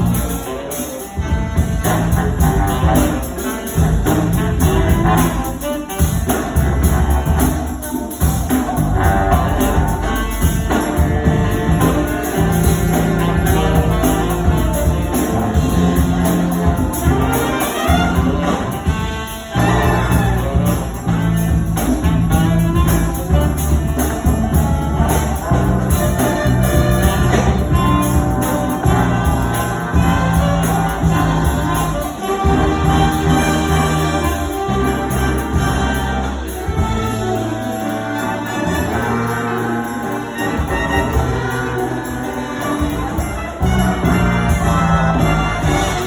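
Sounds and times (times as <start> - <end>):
big band playing jazz: 0.0 - 46.0.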